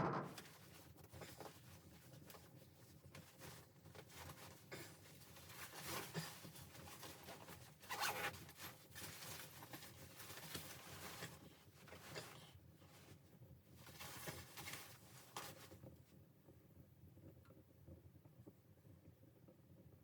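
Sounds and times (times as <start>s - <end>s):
rustling and scraping: 0.0s - 13.2s, 13.8s - 15.9s.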